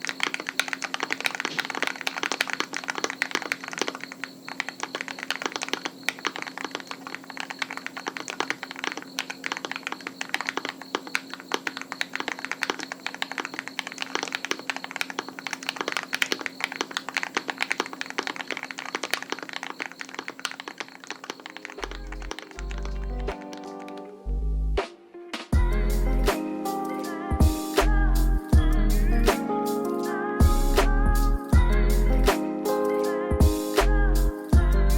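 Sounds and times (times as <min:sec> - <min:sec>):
mechanical keyboard typing: 0:00.0 - 0:24.1.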